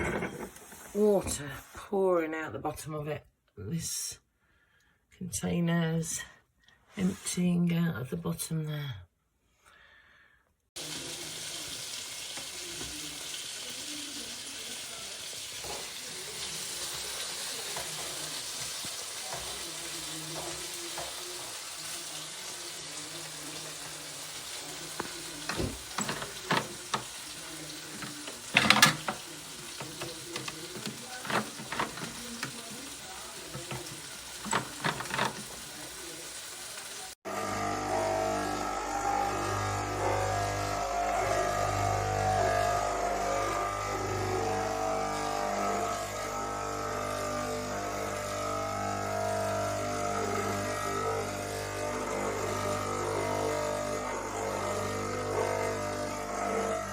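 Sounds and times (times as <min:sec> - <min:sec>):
espresso machine hissing and humming: 0:22.8 - 0:56.9.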